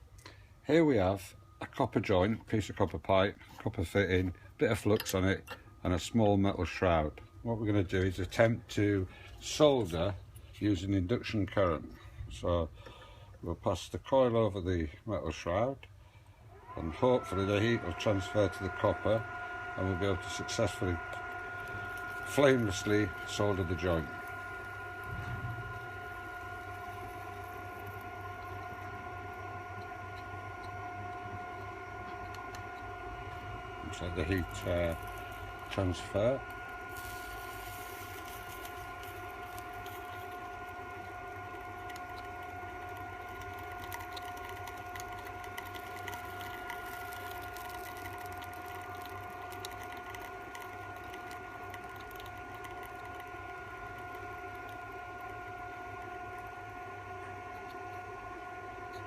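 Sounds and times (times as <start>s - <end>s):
induction heater whine and hum: 0.0s - 59.0s
faint crackling ticks: 37.4s - 56.5s.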